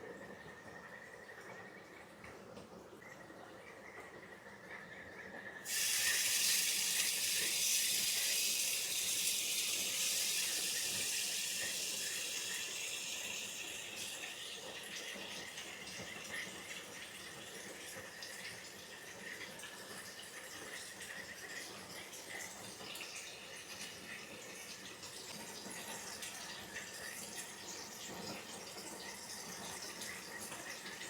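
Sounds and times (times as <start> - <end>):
rushing water hiss: 5.7 - 14.3.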